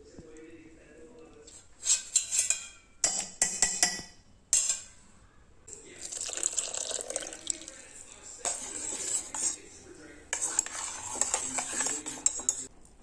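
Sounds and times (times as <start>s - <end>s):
soft stirring hiss: 0.0s - 13.0s
metal utensils clinking on cookware: 1.8s - 5.0s, 10.3s - 12.7s.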